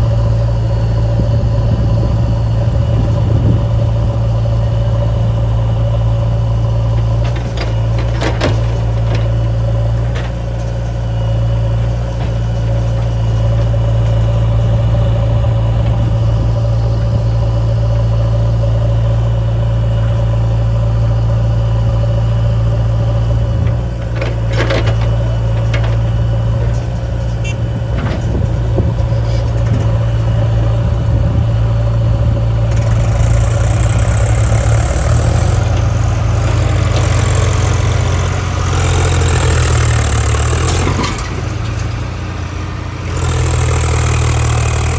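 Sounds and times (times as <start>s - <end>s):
diesel engine droning: 0.0s - 44.9s.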